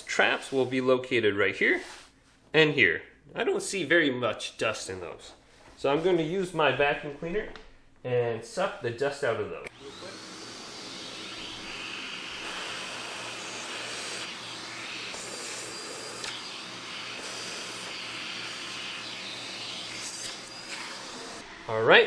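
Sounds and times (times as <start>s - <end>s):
vacuum cleaner running: 9.7s - 22.0s.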